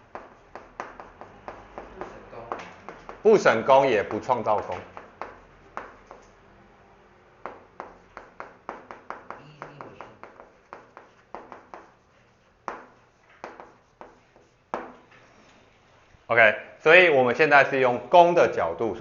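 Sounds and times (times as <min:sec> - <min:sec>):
pen tapping and clicking on paper: 0:00.0 - 0:03.4, 0:04.0 - 0:06.4, 0:07.4 - 0:15.1.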